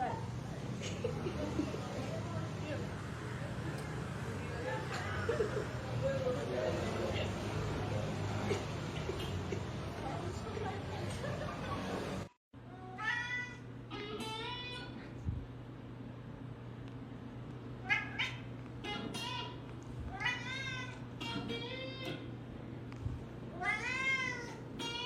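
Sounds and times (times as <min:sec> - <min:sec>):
cat meowing: 0:12.8 - 0:15.0, 0:17.8 - 0:22.3, 0:23.5 - 0:25.0
steady low hum: 0:13.6 - 0:25.0.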